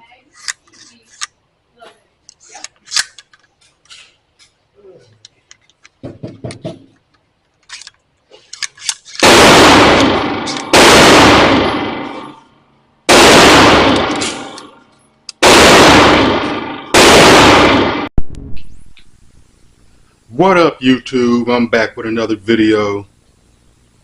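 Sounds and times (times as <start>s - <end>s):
gun handling clicks: 0.4s - 1.4s, 2.2s - 4.0s, 5.2s - 6.0s, 7.0s - 9.4s, 10.0s - 10.7s, 13.8s - 14.7s
loud gunshots with ringing: 9.2s - 12.4s, 13.1s - 14.7s, 15.4s - 18.1s.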